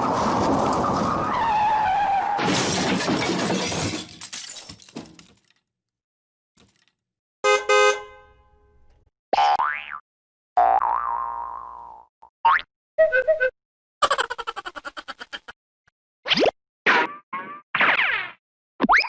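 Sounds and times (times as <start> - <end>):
car crash with breaking glass: 0.0 - 5.3
car horn honk: 7.4 - 8.8.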